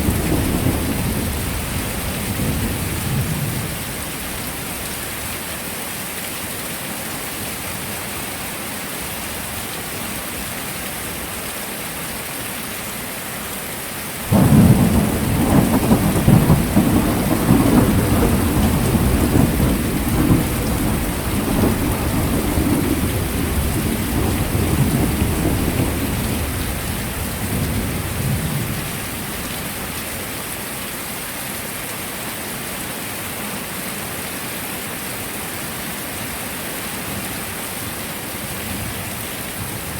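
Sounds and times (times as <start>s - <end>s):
thunder rumbling: 0.0s - 3.8s, 14.3s - 29.9s
heavy rain: 0.0s - 39.9s.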